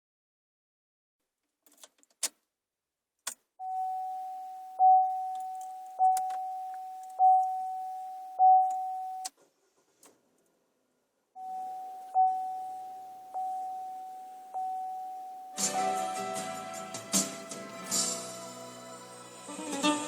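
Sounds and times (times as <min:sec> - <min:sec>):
steady high tone: 0:11.4 - 0:20.0.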